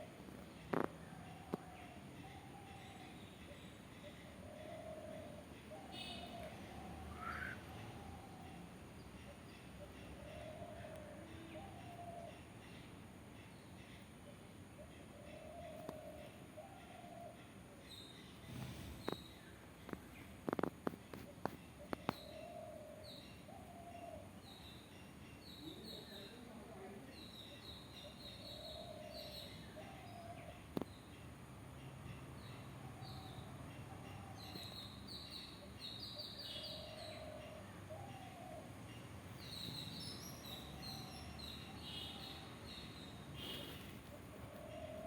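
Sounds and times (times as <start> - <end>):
birds chirping: 0.0 - 45.0
drawn-out bird call: 1.1 - 12.5.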